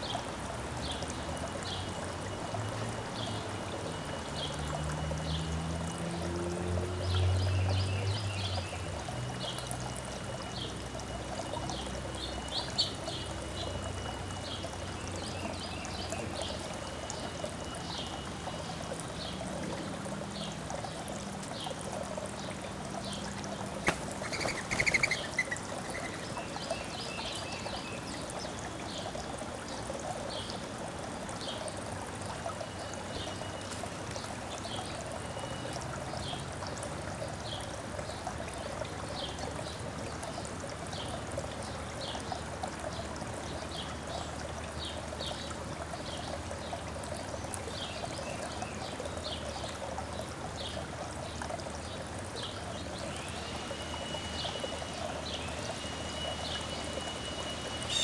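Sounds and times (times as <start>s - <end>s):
water trickling and pouring: 0.0s - 58.0s
small birds chirping: 22.4s - 29.1s.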